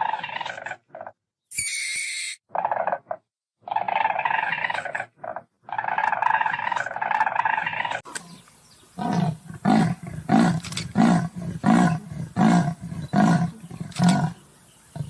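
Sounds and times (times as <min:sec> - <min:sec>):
lion roaring grunts: 0:09.0 - 0:15.0.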